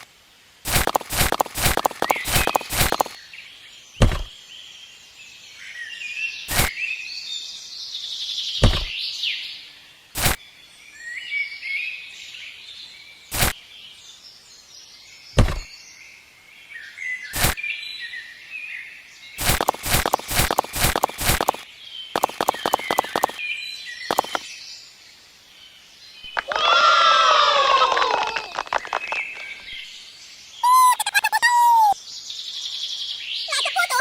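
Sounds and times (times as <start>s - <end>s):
sharp knock: 4.0s - 4.3s, 8.6s - 8.9s, 15.4s - 15.7s.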